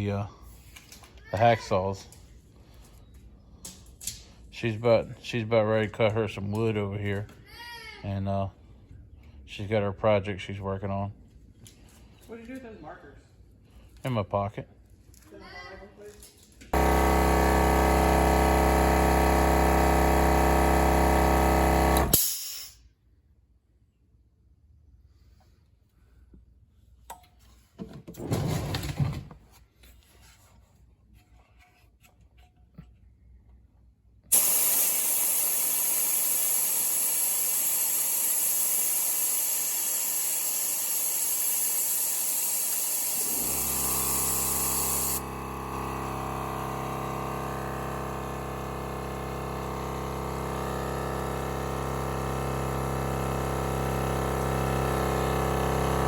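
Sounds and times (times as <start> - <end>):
air compressor motor and pump: 16.8 - 22.8, 34.3 - 56.0
loud steady air hiss: 16.8 - 22.8, 34.3 - 51.6.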